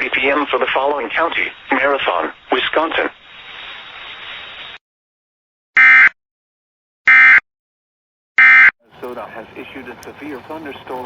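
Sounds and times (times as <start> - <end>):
radio hiss: 0.0 - 4.8, 8.9 - 11.0.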